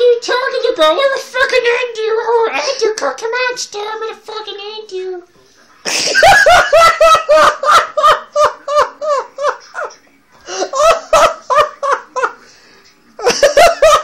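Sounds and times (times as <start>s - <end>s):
man laughing hard: 5.9s - 9.9s, 10.5s - 12.3s, 13.2s - 14.0s.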